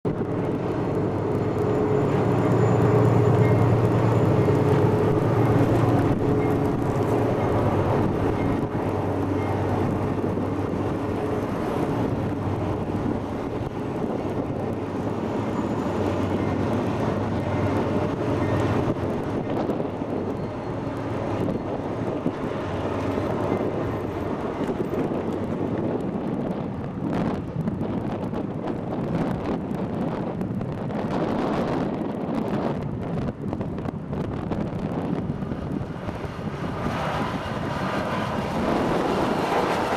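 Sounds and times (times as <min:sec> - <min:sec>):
diesel locomotive engine drone: 0:00.0 - 0:39.9.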